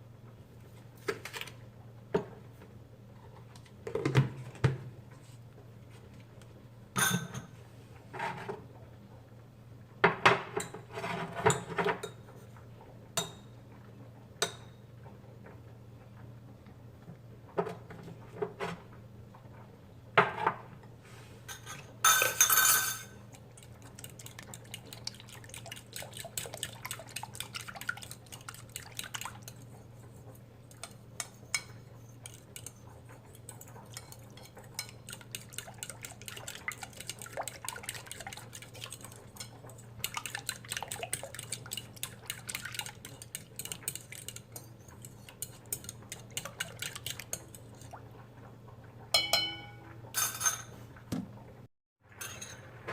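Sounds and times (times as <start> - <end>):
utensils and dishes clinking: 21.5 - 25.0, 49.2 - 50.8, 52.2 - 52.7.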